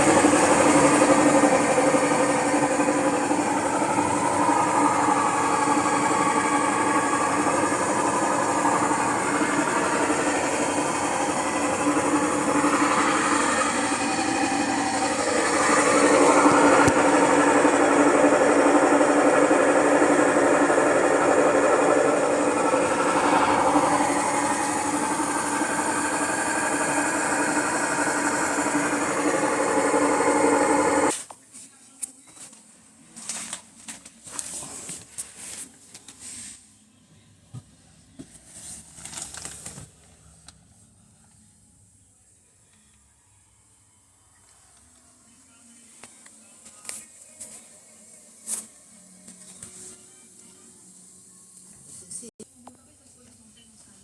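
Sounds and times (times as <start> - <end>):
washing machine spinning drone: 0.0 - 31.1.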